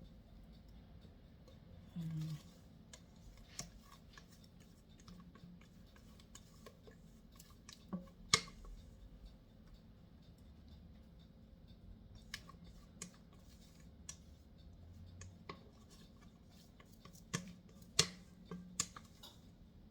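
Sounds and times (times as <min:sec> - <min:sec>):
spatula and cake pans clicking: 0:16.8 - 0:19.4.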